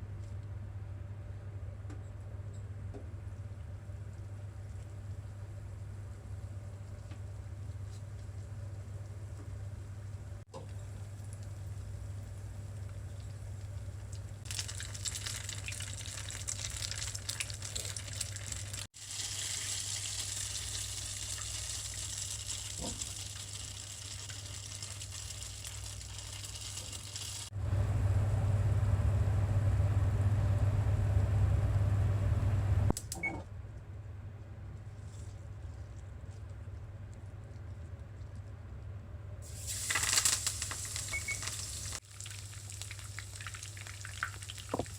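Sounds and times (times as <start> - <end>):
constant low hum: 0.0 - 18.8, 20.6 - 39.4
water running from a tap: 14.5 - 27.5, 39.5 - 44.9.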